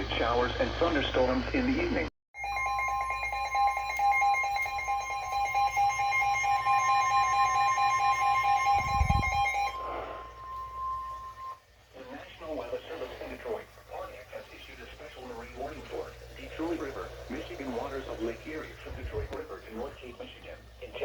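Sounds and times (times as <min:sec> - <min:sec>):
rapid lower beeping tone: 0:02.4 - 0:11.6
steady high alarm tone: 0:02.4 - 0:13.6, 0:15.2 - 0:19.5.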